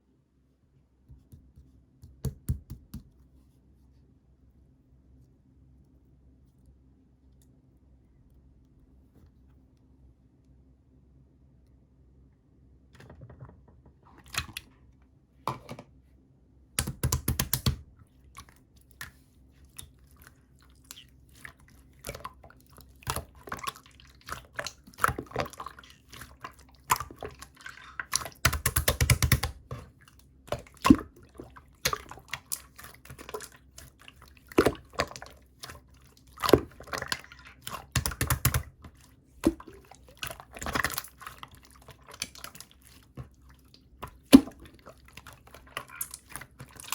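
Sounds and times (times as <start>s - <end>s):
slime squelching and popping: 16.8s - 46.9s.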